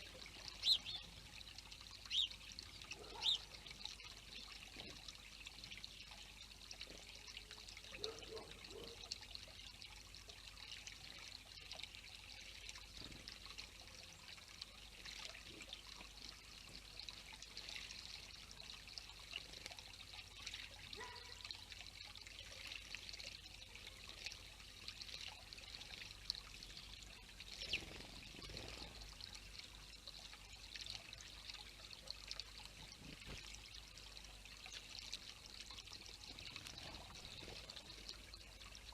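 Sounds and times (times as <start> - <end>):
trickle of running water: 0.0 - 38.9.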